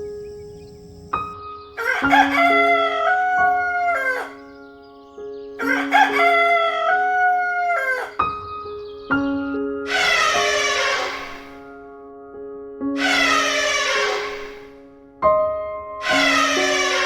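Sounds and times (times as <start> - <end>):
background music: 0.3 - 12.2
rooster crowing: 1.8 - 4.5, 5.6 - 8.4, 9.9 - 11.6, 13.0 - 14.8, 16.0 - 17.0.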